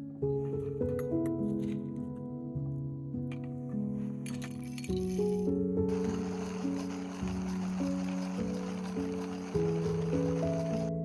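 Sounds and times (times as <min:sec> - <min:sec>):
music of held notes: 0:05.9 - 0:11.0.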